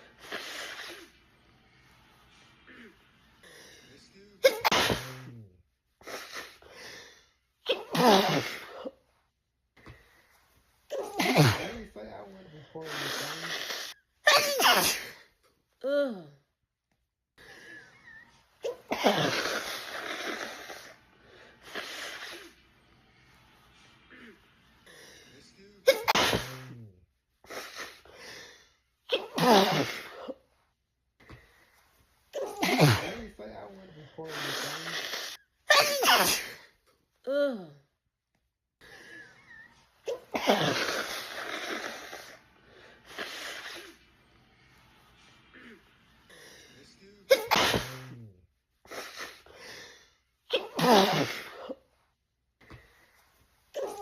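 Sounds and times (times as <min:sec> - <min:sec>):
woman sneezing: 0:04.4 - 0:05.4, 0:07.6 - 0:09.0, 0:10.9 - 0:16.3, 0:18.2 - 0:20.9, 0:25.9 - 0:26.8, 0:29.1 - 0:30.4, 0:32.3 - 0:36.7, 0:39.6 - 0:42.3, 0:47.3 - 0:48.3, 0:50.5 - 0:51.8, 0:53.7 - 0:54.0.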